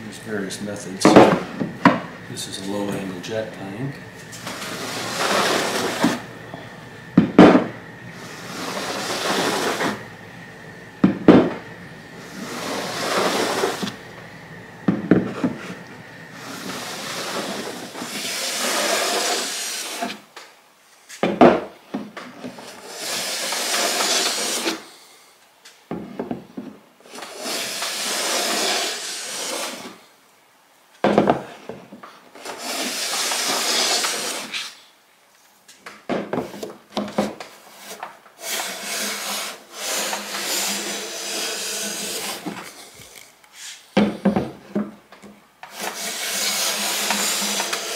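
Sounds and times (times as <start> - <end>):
hand plane shaving wood: 4.3 - 6.3, 7.5 - 10.0, 12.1 - 14.0, 15.2 - 20.2, 22.6 - 24.9, 27.1 - 30.0, 32.4 - 34.8, 37.0 - 43.8, 45.6 - 47.9.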